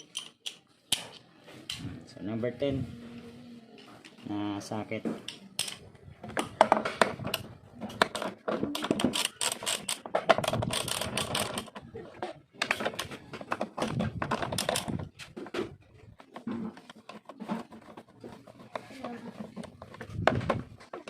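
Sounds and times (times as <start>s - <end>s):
ratchet wrench clicking: 9.1s - 11.7s.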